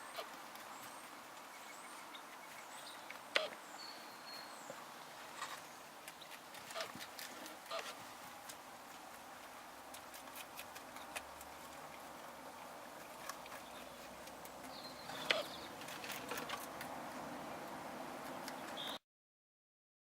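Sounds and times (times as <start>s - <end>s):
low steady hiss: 0.0s - 19.0s
camera squeak: 3.4s - 3.6s, 15.2s - 15.6s.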